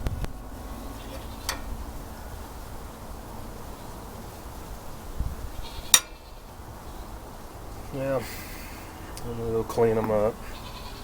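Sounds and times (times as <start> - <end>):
engine parts clicking: 0.0 - 1.9
steady low background noise: 0.0 - 11.0.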